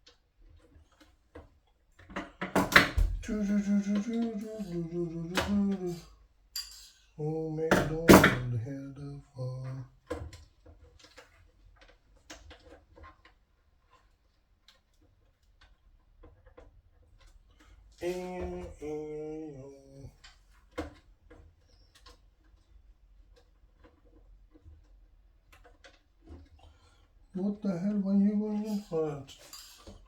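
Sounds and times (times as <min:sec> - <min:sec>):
tools and parts clicking: 0:02.0 - 0:07.1
man humming: 0:03.0 - 0:06.2, 0:07.2 - 0:09.9, 0:18.0 - 0:20.2, 0:27.4 - 0:29.3.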